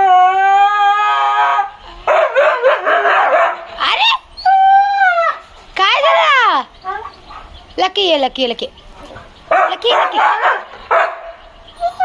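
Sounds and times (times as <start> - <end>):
dog howling and yelping: 0.0 - 7.5, 11.7 - 12.0.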